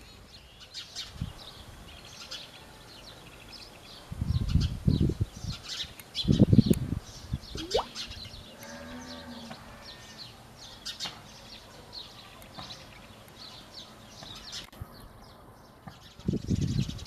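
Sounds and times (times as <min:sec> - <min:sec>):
sparrows chirping: 0:00.0 - 0:17.0.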